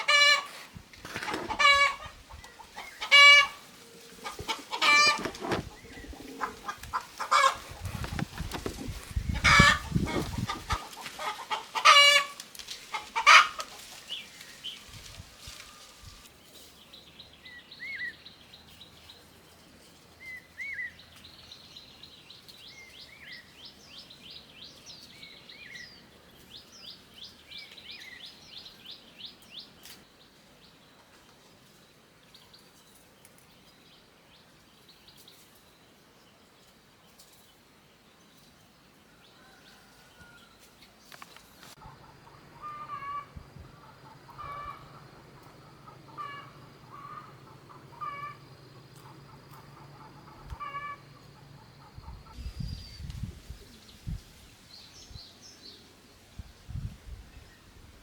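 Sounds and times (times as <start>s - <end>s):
chickens squawking and clucking: 0.0s - 14.0s, 41.8s - 52.4s
small birds chirping: 41.0s - 57.7s.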